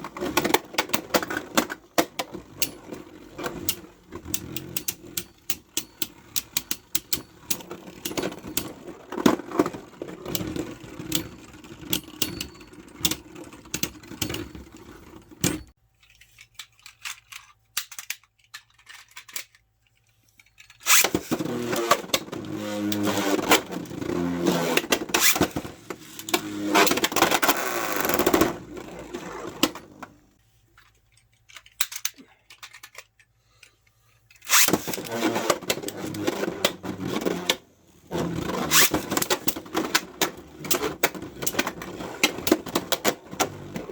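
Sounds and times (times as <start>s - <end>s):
tops clacking and rattling: 0.0s - 15.7s, 20.5s - 30.2s, 34.4s - 43.9s
spinning tops whirring: 20.8s - 30.1s, 34.5s - 39.7s.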